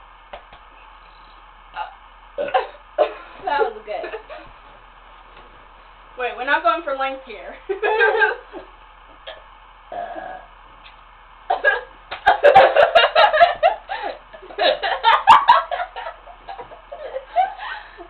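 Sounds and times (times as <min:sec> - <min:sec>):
girls laughing: 0:07.7 - 0:08.7, 0:11.5 - 0:18.0.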